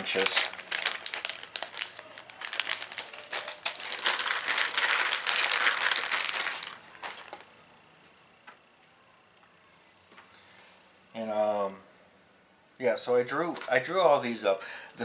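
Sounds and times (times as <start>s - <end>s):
packaging crinkling: 0.0s - 7.5s.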